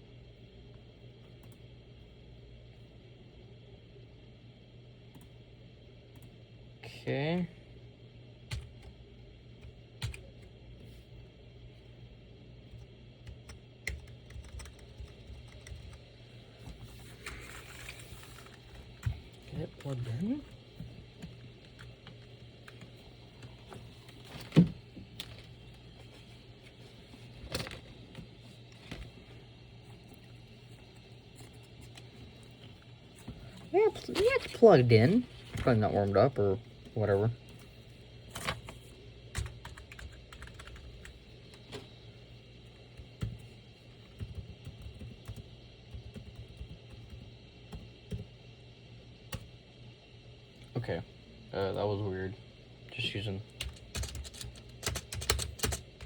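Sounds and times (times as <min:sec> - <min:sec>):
computer keyboard clicks: 0:08.5 - 0:08.9, 0:09.6 - 0:10.5, 0:12.8 - 0:16.0, 0:39.3 - 0:41.8, 0:53.6 - 0:56.0.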